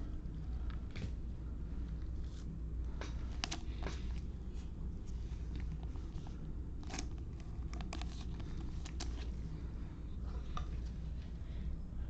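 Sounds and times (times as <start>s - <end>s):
steady low hum: 0.0s - 12.0s
card crinkling in plastic sleeve: 6.8s - 9.4s.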